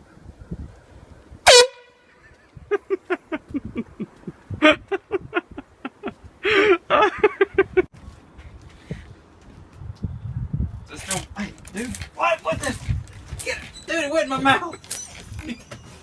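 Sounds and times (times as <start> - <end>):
air horn blasts: 1.5 - 2.2.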